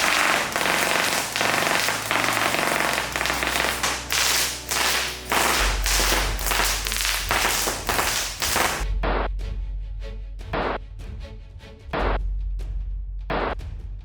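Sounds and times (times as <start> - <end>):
airsoft gun firing bursts: 0.0 - 8.8
pellets striking umbrella: 0.0 - 8.8.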